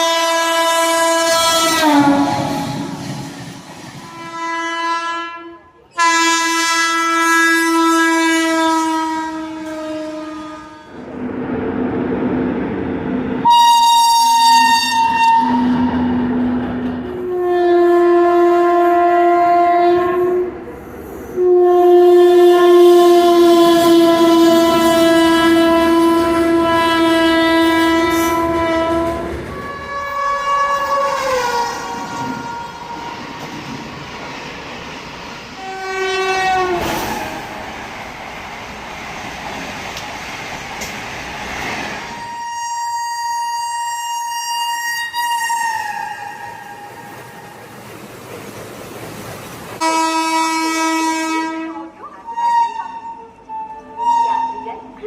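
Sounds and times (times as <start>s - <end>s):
locomotive horn blasts: 0.0s - 3.0s, 4.0s - 11.1s, 13.4s - 20.6s, 21.4s - 33.3s, 35.6s - 37.6s, 42.2s - 47.1s, 49.8s - 54.9s
train running noise: 0.0s - 21.5s, 22.1s - 55.0s.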